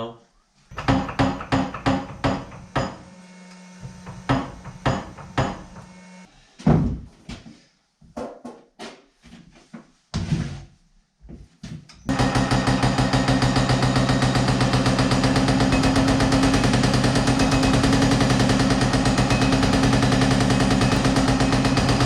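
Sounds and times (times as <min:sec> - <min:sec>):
metal-shaping machine pounding: 0:00.7 - 0:06.1, 0:12.1 - 0:22.0.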